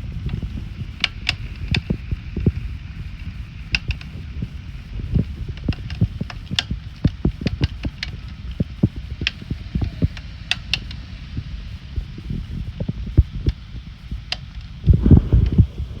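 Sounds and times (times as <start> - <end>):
low rumble: 0.0 - 10.4, 14.8 - 16.0
raindrops tapping a surface: 0.0 - 16.0.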